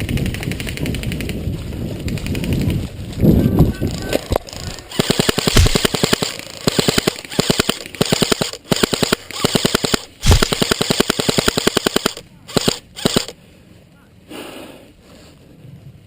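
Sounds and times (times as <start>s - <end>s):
airsoft rifle full auto bursts: 4.9s - 13.4s.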